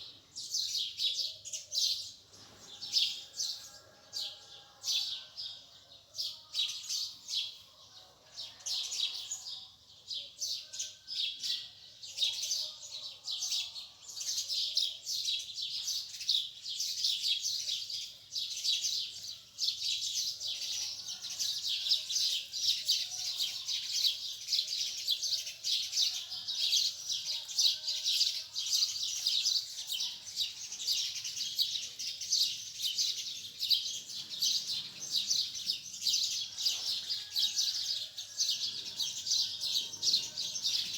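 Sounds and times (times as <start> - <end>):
small birds chirping: 0.0 - 7.9, 8.5 - 40.9.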